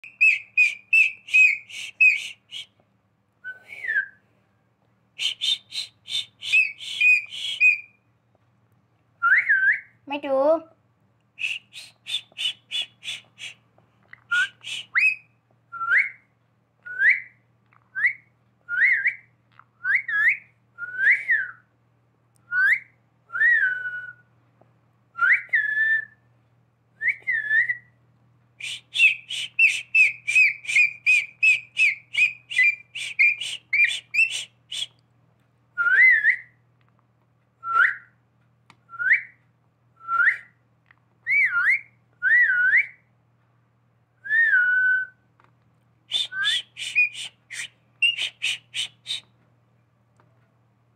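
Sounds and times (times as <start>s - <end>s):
parakeet whistling: 0.0s - 2.8s, 5.2s - 8.0s, 11.4s - 13.6s, 14.3s - 16.2s, 28.6s - 34.9s, 41.3s - 43.0s, 46.1s - 49.3s.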